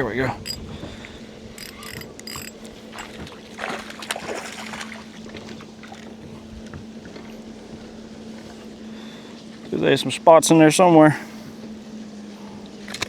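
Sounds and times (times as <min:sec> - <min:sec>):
electric motor humming: 0:01.6 - 0:02.7
light clicks: 0:01.6 - 0:02.7.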